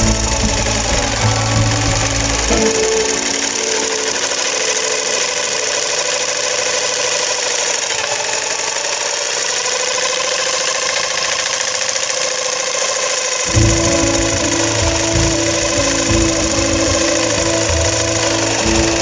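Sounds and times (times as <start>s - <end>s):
small motor running: 0.0s - 19.0s.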